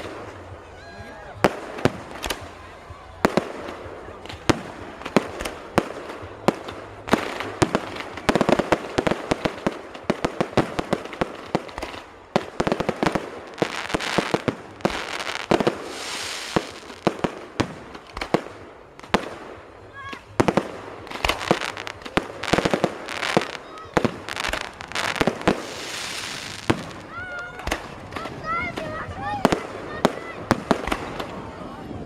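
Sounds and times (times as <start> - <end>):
fireworks bangs and crackles: 0.0 - 32.0
firework hissing rush: 10.6 - 18.4, 20.6 - 27.1.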